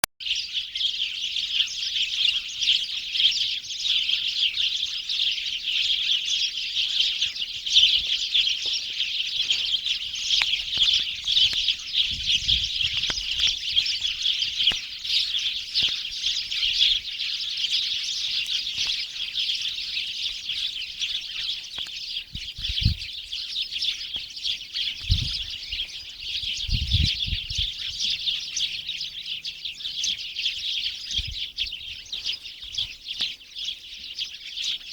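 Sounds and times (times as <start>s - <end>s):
small birds chirping: 0.0s - 34.9s.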